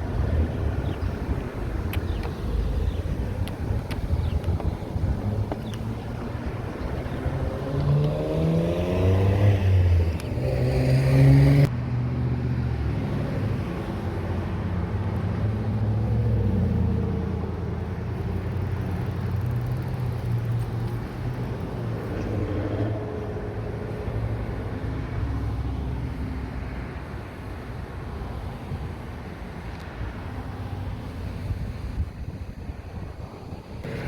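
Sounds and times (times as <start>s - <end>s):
car engine accelerating: 3.3s - 11.7s.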